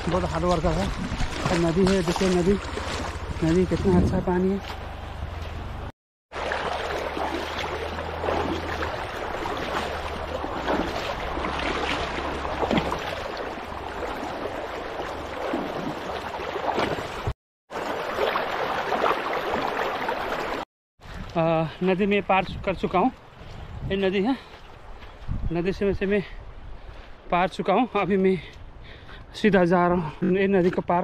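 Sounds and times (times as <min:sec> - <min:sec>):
splashes of wading footsteps: 0:00.0 - 0:22.0
river water rushing: 0:06.4 - 0:17.2, 0:17.8 - 0:20.6.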